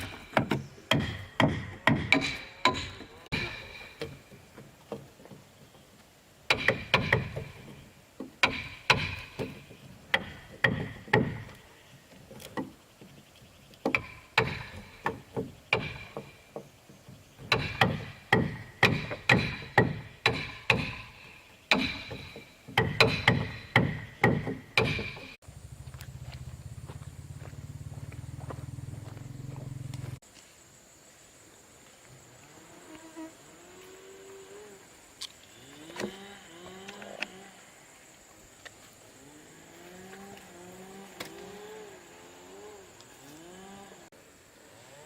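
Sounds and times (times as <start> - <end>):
hand tool striking wood: 0.0 - 5.4, 6.5 - 11.6, 13.8 - 25.4.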